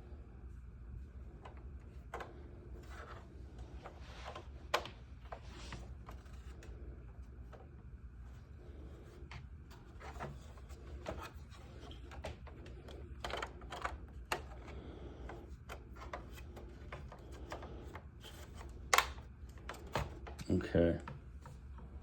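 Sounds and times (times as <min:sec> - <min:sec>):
plastic parts clicking and rustling: 0:09.0 - 0:20.6.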